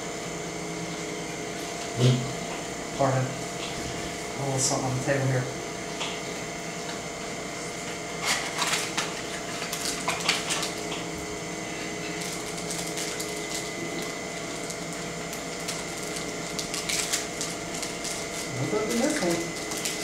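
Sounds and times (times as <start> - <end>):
steady room hum: 0.0 - 20.0
cards and packaging rustling: 12.2 - 20.0.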